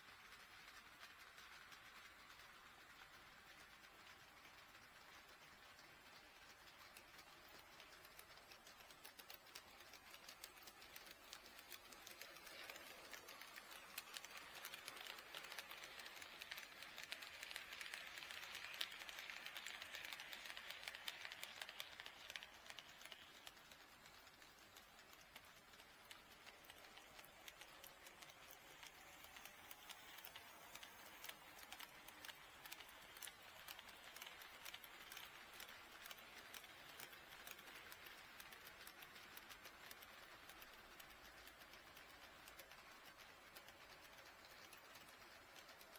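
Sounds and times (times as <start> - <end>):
model train wheels clicking: 0.0 - 45.9.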